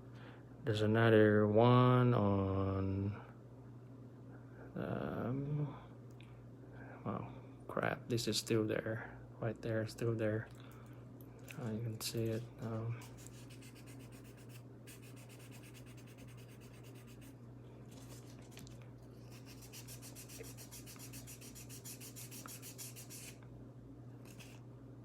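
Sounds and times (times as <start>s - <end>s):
sandpaper rubbing on metal: 13.0s - 17.3s, 19.3s - 23.4s.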